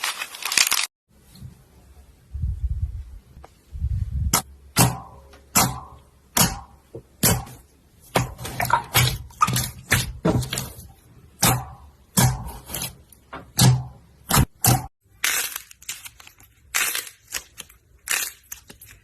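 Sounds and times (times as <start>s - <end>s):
dry soap crunching: 15.1s - 19.0s.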